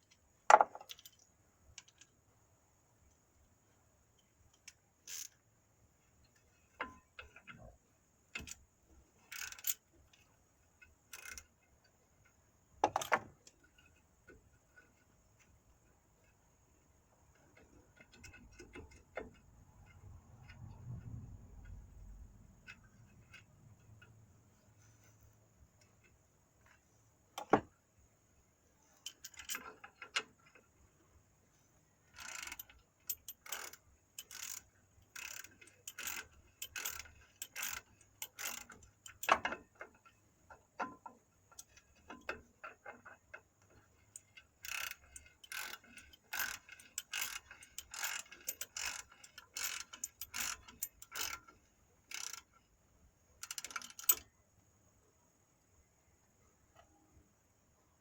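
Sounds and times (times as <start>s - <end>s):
ratchet wrench clicking: 4.5s - 5.4s, 9.2s - 10.2s, 11.1s - 11.6s, 32.1s - 39.5s, 43.9s - 52.6s, 53.4s - 54.2s.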